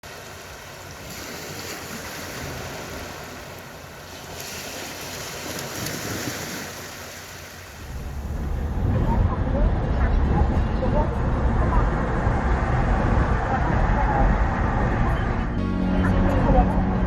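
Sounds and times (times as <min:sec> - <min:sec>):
sea waves washing onto beach: 0:00.0 - 0:09.1.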